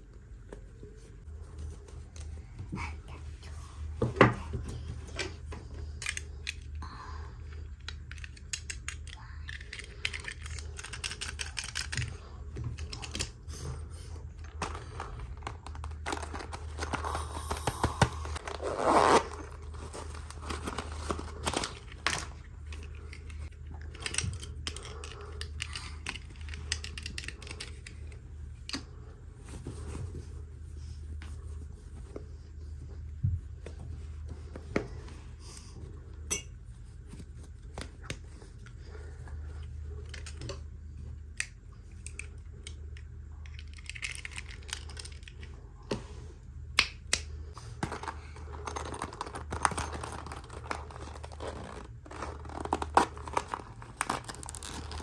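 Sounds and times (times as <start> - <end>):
steady low hum: 0.0 - 55.0
packaging tearing and crinkling: 14.6 - 22.3, 47.9 - 55.0.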